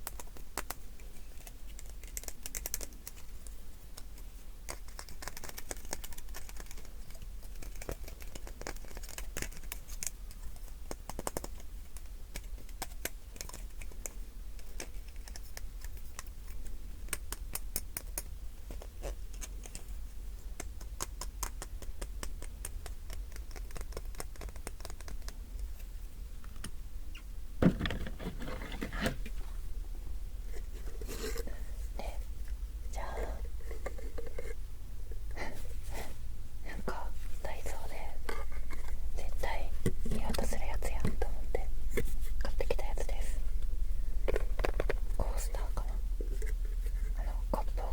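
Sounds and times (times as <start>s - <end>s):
handling noise: 27.6s - 31.6s.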